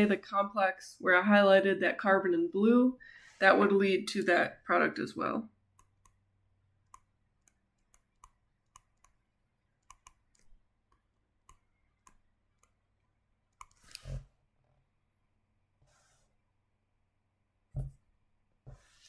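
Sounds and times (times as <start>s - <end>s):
computer clicks: 9.8s - 10.5s.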